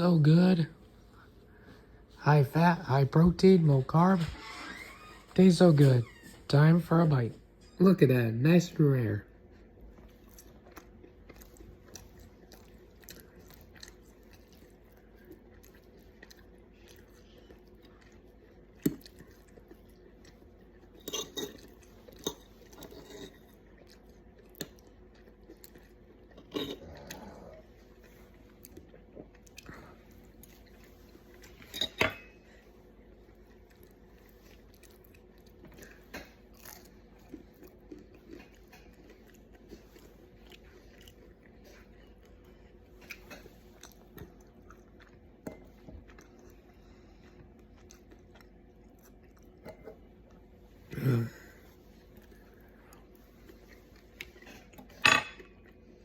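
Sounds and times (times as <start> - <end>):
person chewing food: 9.2 - 56.0
cutlery clinking on plate: 54.9 - 55.6.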